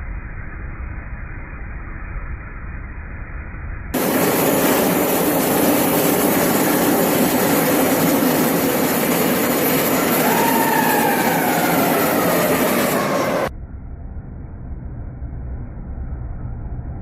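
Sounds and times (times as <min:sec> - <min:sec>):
torch flame rushing: 0:04.0 - 0:13.5
faint whistle sliding downward: 0:05.2 - 0:13.5.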